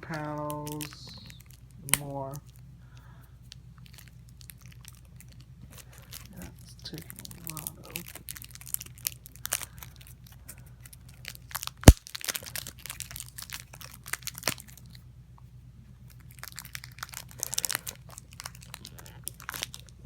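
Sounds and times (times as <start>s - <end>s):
packaging being torn and crinkled: 3.8s - 10.1s, 10.8s - 15.0s, 16.1s - 20.0s.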